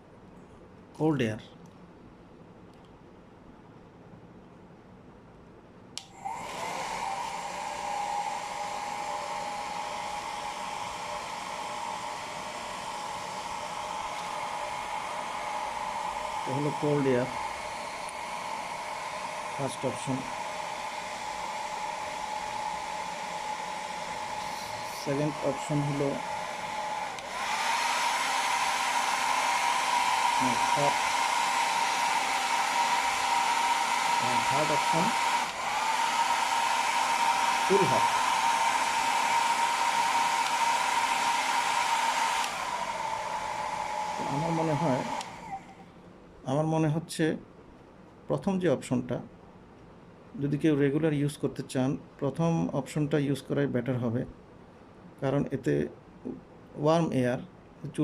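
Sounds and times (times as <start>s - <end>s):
hair dryer switch click: 6.0s - 7.0s, 18.0s - 18.3s, 26.2s - 29.7s, 34.8s - 35.9s, 36.8s - 42.8s, 45.0s - 45.6s
hair dryer motor whining: 6.0s - 45.9s.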